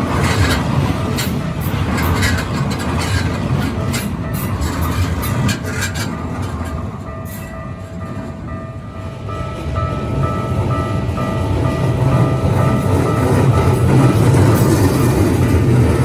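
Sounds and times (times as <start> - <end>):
wheels clicking over rail joints: 0.0 - 8.3
level-crossing warning bell: 0.0 - 16.0
train rumble: 0.0 - 16.0.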